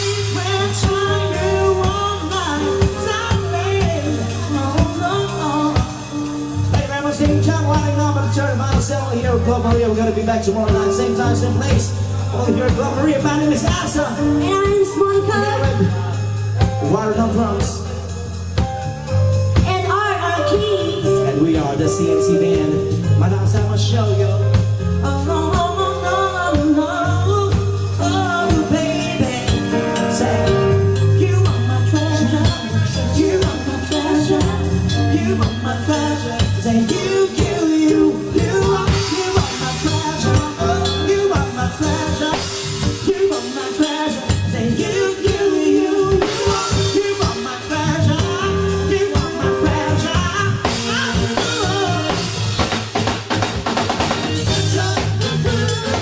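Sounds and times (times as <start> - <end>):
drum kit beat: 0.0 - 56.0
live band dance music: 0.0 - 56.0.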